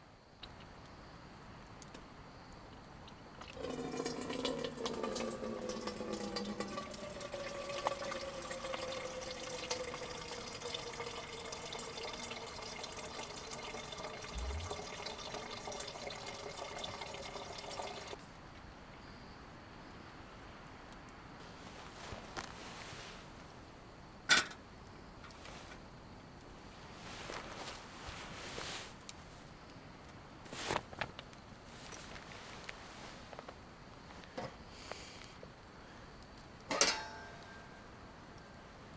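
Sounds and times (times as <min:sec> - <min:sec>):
food sizzling in frying pan: 0:03.6 - 0:15.8.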